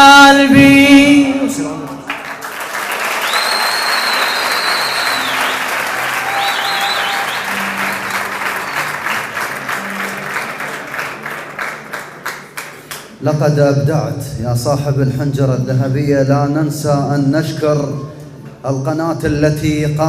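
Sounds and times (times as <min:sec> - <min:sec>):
audience applauding: 0:01.9 - 0:13.2
high whistles: 0:02.9 - 0:09.4.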